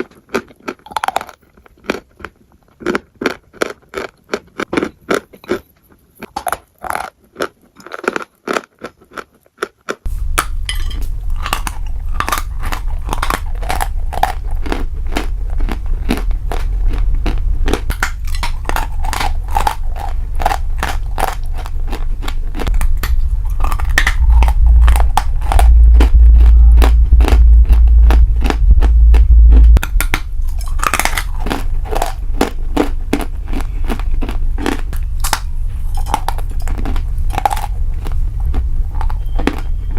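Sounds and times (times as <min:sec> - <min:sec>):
person chewing crunchy food: 0:00.0 - 0:39.9
heavy low rumble: 0:10.1 - 0:39.9.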